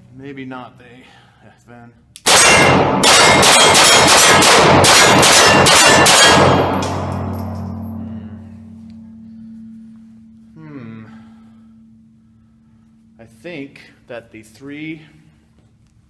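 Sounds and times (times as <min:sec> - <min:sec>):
pistol rapid fire: 0:02.2 - 0:07.3.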